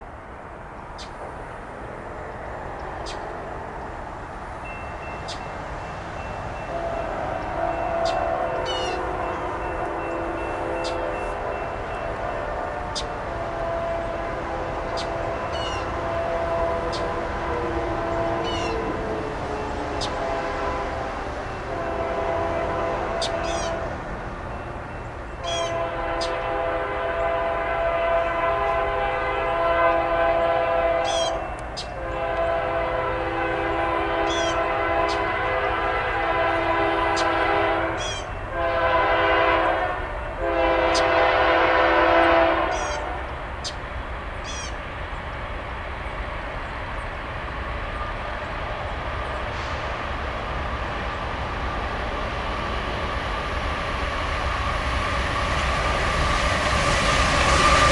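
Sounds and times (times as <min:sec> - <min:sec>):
train rumbling past: 0:00.0 - 0:57.9
train air horn blasts: 0:06.2 - 0:24.6, 0:25.4 - 0:43.3, 0:48.2 - 0:57.9.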